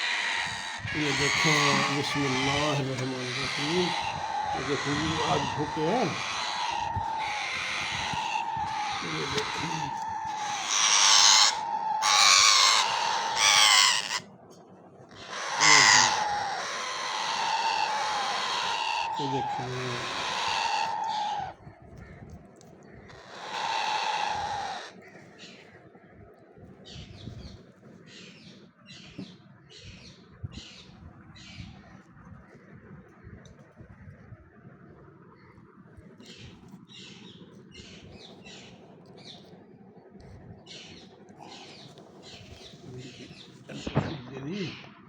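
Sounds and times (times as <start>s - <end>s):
parakeet chick squawking: 0.0s - 14.2s, 15.2s - 21.5s, 23.1s - 24.9s.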